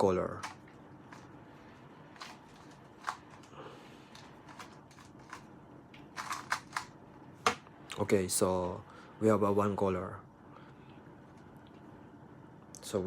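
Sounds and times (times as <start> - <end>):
puzzle cube clicking: 6.0 - 6.9.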